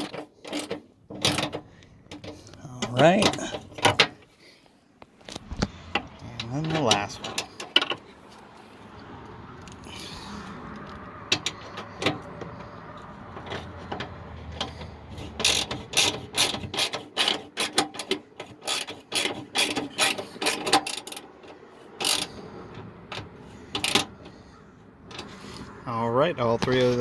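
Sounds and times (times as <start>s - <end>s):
socket ratchet clicking: 14.6s - 22.3s.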